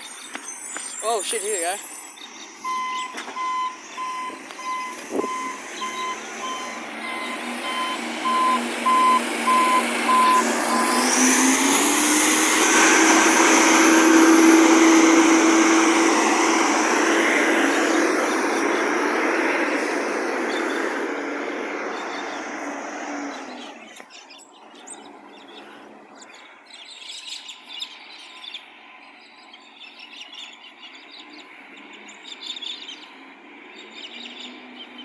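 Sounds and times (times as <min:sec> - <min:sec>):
truck reversing beeper: 0:00.0 - 0:24.0
diesel truck engine revving: 0:02.5 - 0:26.2, 0:31.2 - 0:35.0.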